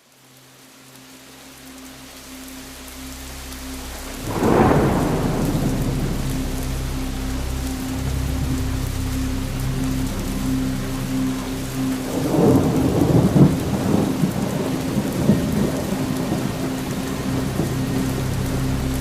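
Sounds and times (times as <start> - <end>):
steady rain: 0.0 - 19.0
low steady hum: 2.0 - 19.0
thunder clap rumbling: 4.2 - 8.8, 12.0 - 19.0.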